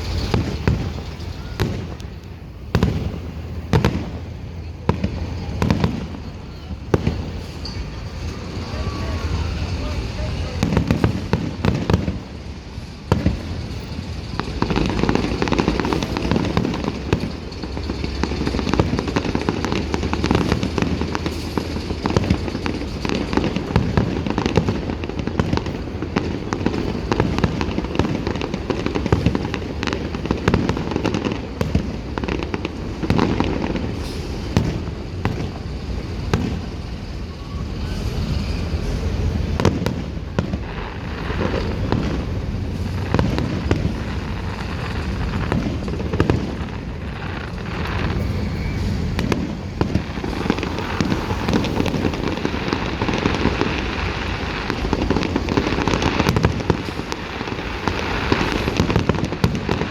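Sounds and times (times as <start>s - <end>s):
fireworks bangs and crackles: 0.0s - 59.9s.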